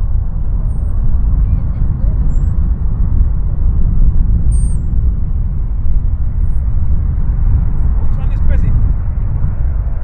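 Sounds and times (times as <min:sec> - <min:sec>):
low outdoor rumble: 0:00.0 - 0:10.0
faint high chirps: 0:04.5 - 0:04.8.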